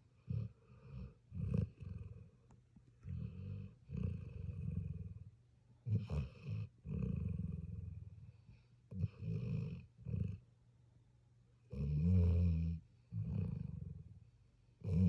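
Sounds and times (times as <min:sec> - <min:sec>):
puppy snoring: 0:00.2 - 0:02.4, 0:03.0 - 0:05.3, 0:05.9 - 0:10.4, 0:11.7 - 0:14.2, 0:14.8 - 0:15.0.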